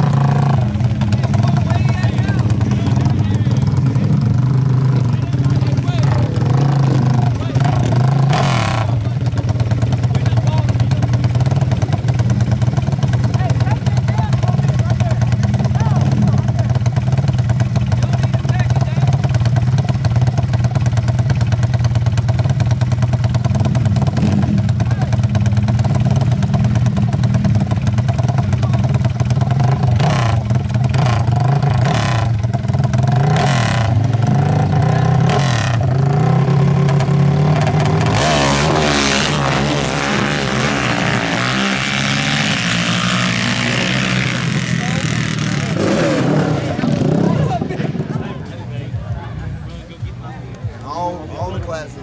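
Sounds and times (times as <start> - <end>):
engine revving up hard: 0.0 - 9.2, 29.6 - 32.4, 33.0 - 48.4
atv engines idling: 0.0 - 52.0
engine throttle blips: 0.0 - 52.0.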